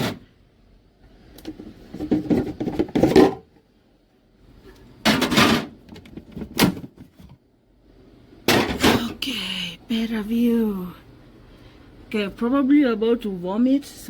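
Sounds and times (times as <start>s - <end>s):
plastic fridge drawers clattering: 0.0s - 0.2s, 1.4s - 3.5s, 5.0s - 7.4s, 8.4s - 9.1s.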